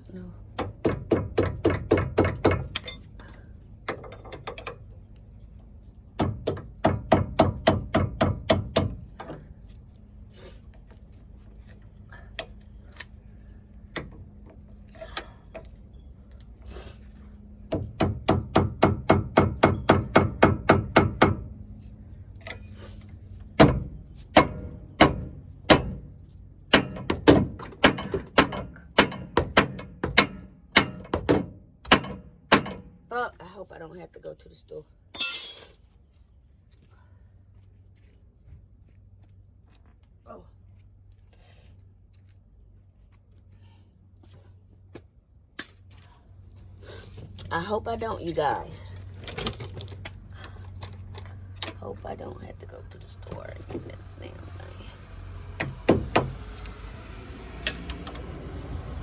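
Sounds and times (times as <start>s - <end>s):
hammer striking metal: 35.2s - 35.8s.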